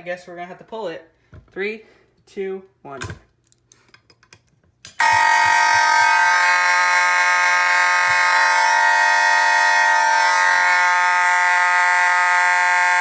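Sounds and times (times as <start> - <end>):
fire alarm horns blaring: 5.0 - 13.0.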